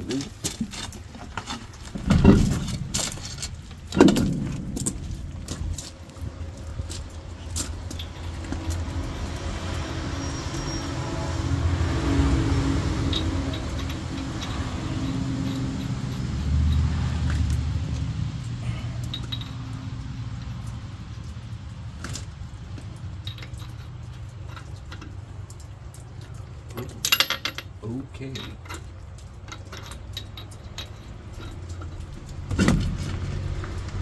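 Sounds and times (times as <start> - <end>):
engine running: 1.5 - 26.6.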